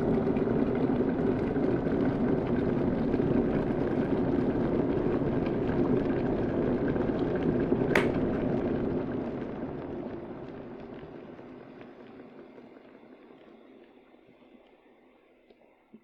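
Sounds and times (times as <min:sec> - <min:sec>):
kettle water boiling: 0:00.0 - 0:16.0
kettle switch click: 0:08.0 - 0:08.2.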